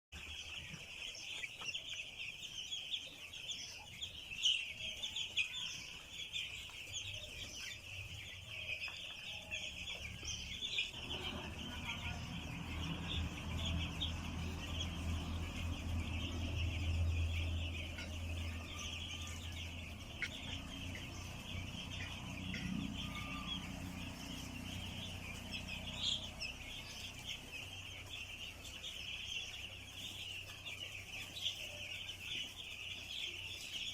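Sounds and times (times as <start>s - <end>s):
chicks peeping: 0.1s - 33.9s
low hum: 9.6s - 29.0s.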